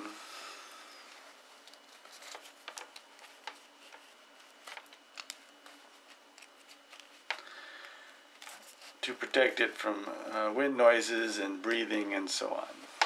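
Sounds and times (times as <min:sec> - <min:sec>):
low steady hiss: 0:00.0 - 0:13.0
light rustles of handling: 0:00.9 - 0:07.4, 0:08.1 - 0:09.8
small irregular clicks: 0:04.7 - 0:05.5.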